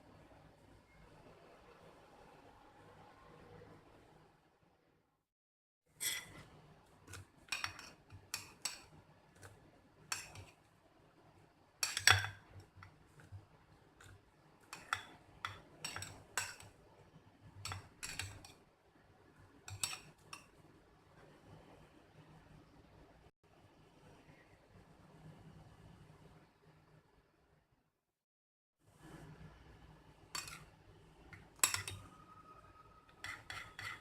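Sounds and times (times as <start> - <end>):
cutlery clinking against ceramic mug: 6.0 - 6.4, 7.1 - 9.5, 10.1 - 10.6, 11.8 - 13.4, 14.0 - 16.7, 17.6 - 18.6, 19.7 - 20.5, 30.4 - 30.7, 31.3 - 32.2, 33.1 - 34.0.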